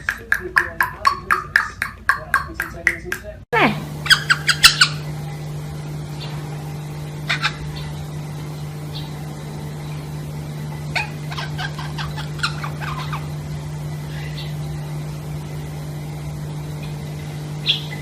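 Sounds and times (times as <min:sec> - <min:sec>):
parrot chirps and clicks: 0:00.0 - 0:03.4, 0:04.0 - 0:05.0, 0:10.9 - 0:13.5
steady low hum: 0:00.0 - 0:18.0.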